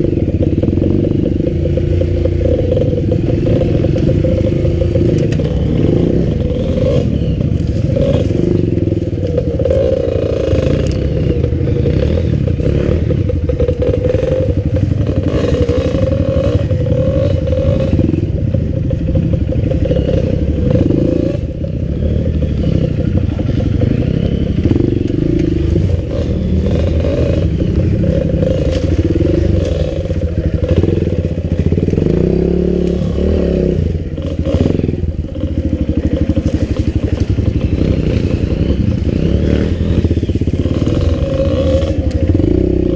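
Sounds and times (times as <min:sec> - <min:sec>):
motorcycle engine running: 0:00.0 - 0:42.9.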